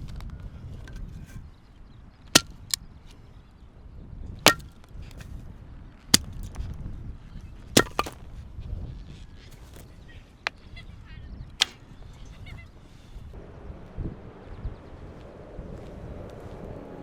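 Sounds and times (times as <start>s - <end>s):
sharp strikes: 7.8s - 8.1s.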